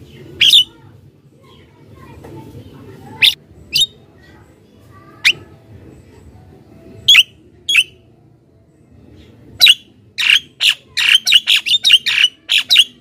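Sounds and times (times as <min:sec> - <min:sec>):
bird harsh rasping calls: 0:00.4 - 0:00.8, 0:03.2 - 0:04.0, 0:09.6 - 0:13.0.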